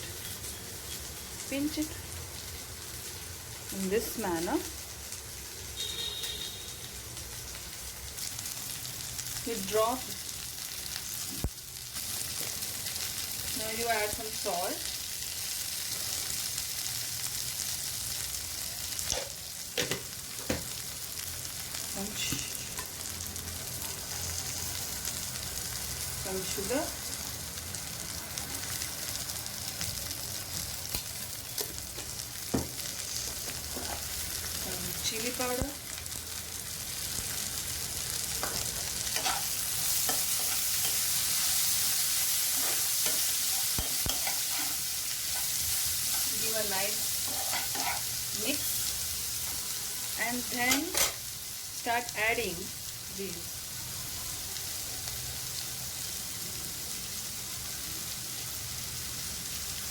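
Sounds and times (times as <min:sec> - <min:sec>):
food sizzling in hot oil: 0:00.0 - 0:59.9
utensil scraping pan: 0:47.2 - 0:48.1.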